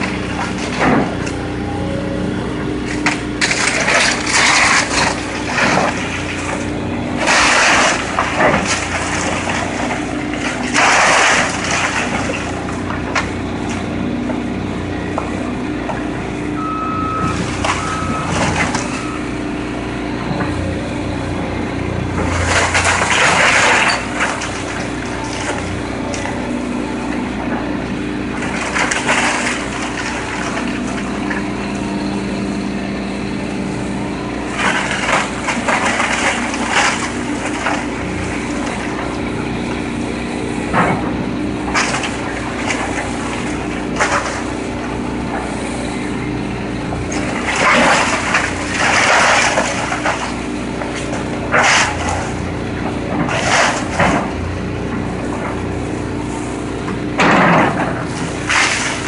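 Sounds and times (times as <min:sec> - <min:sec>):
diesel engine running: 0:00.0 - 0:59.0
debris crunching and crashing: 0:03.0 - 0:13.5, 0:22.3 - 0:26.3, 0:28.3 - 0:31.5, 0:47.0 - 0:54.4, 0:57.2 - 0:59.0.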